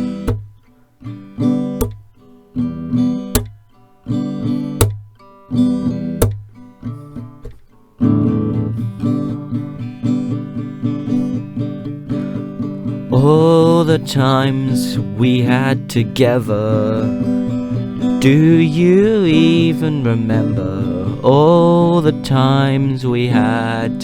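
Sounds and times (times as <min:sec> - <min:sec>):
percussive hits on guitar: 0:00.0 - 0:00.7, 0:01.4 - 0:02.3, 0:03.0 - 0:05.3, 0:05.9 - 0:07.8
acoustic guitar strumming: 0:00.0 - 0:24.0.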